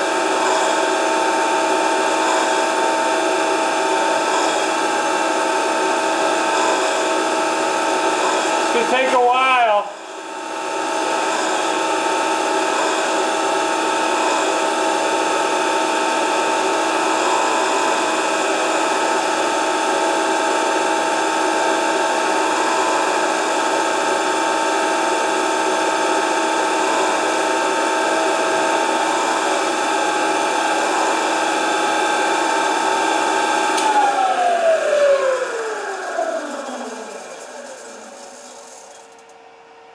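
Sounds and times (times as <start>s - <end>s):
electric grinder motor whining: 10.0s - 39.4s.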